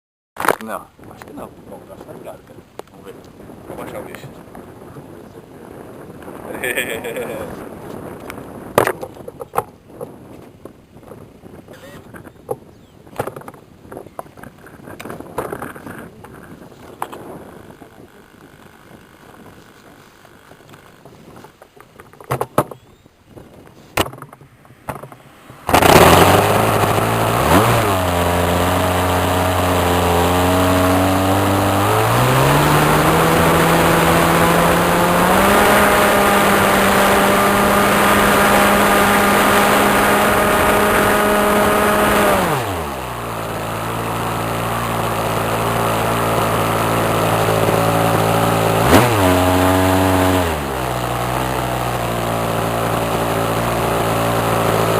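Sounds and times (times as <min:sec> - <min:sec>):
model airplane engine: 0:14.2 - 0:21.6, 0:24.1 - 0:54.9.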